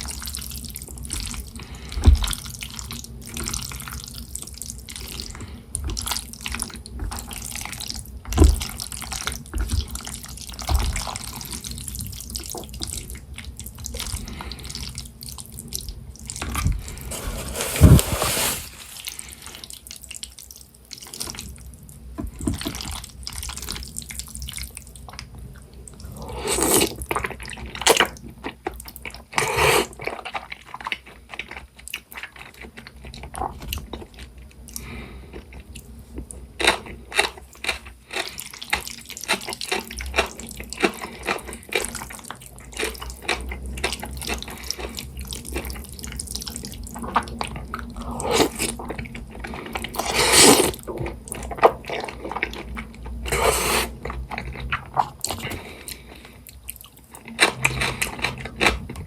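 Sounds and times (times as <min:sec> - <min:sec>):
wet noodle eating sounds: 0:00.0 - 0:21.5, 0:26.0 - 0:35.8, 0:36.6 - 0:59.0
loud slurps: 0:17.0 - 0:19.2, 0:50.0 - 0:50.8, 0:53.3 - 0:54.0.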